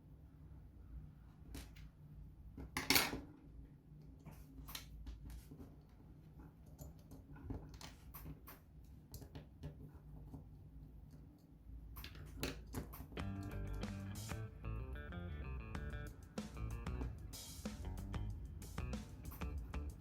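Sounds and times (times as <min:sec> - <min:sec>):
steady low hum: 0:13.0 - 0:20.0.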